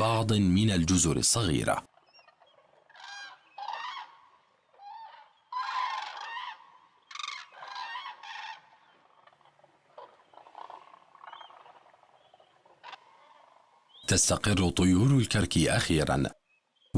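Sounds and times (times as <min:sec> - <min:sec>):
cranes honking calls: 0:02.0 - 0:13.9.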